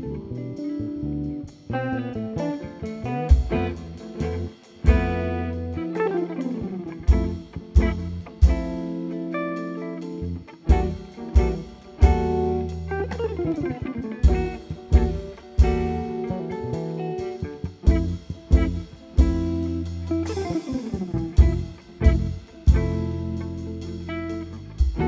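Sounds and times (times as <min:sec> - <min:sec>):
bass: 0:00.0 - 0:25.0
jazz guitar: 0:00.0 - 0:25.0
drum kit strokes: 0:03.3 - 0:09.2, 0:10.6 - 0:25.0
cymbal wash: 0:17.9 - 0:25.0.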